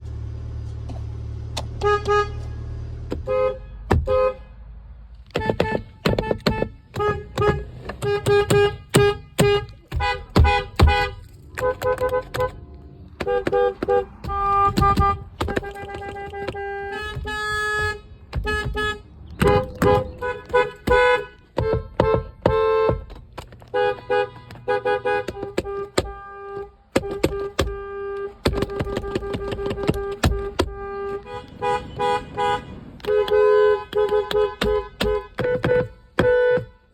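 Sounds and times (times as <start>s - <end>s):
car horns honking: 0.4s - 36.9s.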